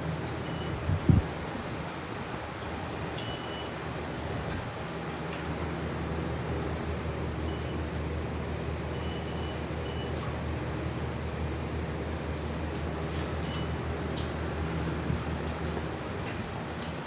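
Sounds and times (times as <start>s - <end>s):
low machine hum: 0.0s - 17.0s.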